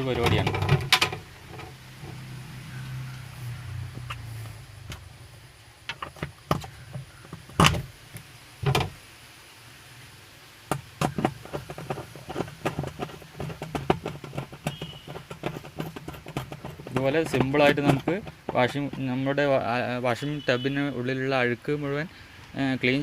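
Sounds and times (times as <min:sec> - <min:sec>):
plastic clicks and knocks: 0:00.1 - 0:02.2, 0:05.8 - 0:09.0, 0:10.7 - 0:19.2.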